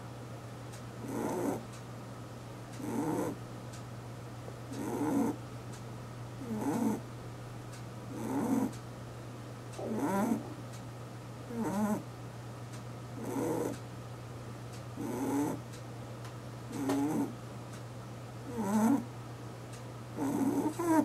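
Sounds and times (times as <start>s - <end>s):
steady low hum: 0.0s - 21.0s
rabbit snoring: 1.0s - 1.8s, 2.8s - 3.4s, 4.7s - 5.4s, 6.4s - 7.1s, 8.1s - 8.8s, 9.8s - 10.8s, 11.4s - 12.1s, 13.2s - 13.8s, 15.0s - 15.7s, 16.7s - 17.4s, 18.4s - 19.1s, 20.1s - 21.0s.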